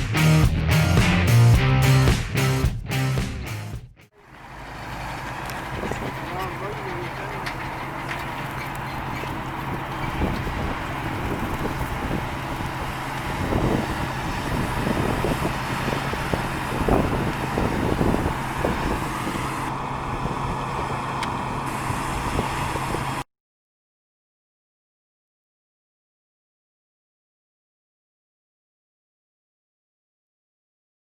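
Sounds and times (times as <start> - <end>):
engine running with low drone: 4.2 - 23.3
wind buffeting microphone: 5.0 - 23.2.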